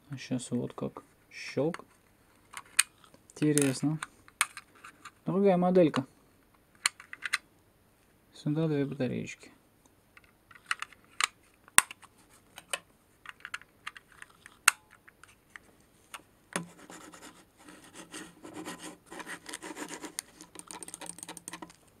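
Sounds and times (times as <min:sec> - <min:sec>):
plastic mouse parts clicking: 0:10.2 - 0:15.4, 0:19.2 - 0:22.0
plastic scraping rub: 0:16.6 - 0:22.0.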